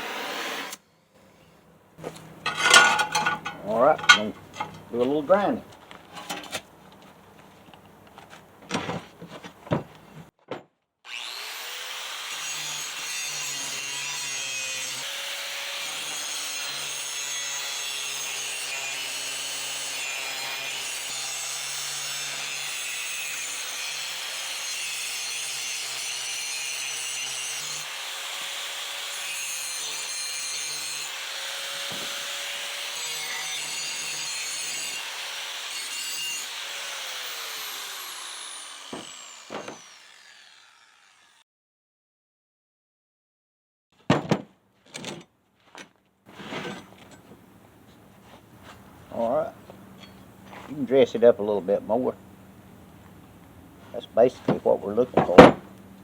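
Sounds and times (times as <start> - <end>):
grinder grinding steel: 2.0 - 6.4, 11.1 - 41.4.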